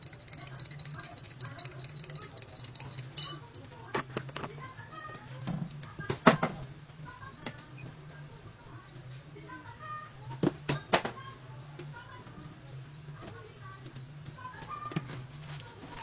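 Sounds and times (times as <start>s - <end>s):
spoon clinking against glass: 0.0s - 4.1s
bird chirping: 0.0s - 16.0s.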